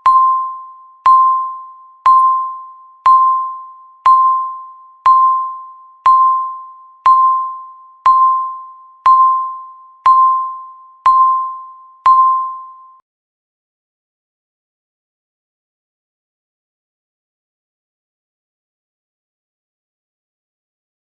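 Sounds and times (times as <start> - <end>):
countdown timer beeping: 0.0 - 13.0.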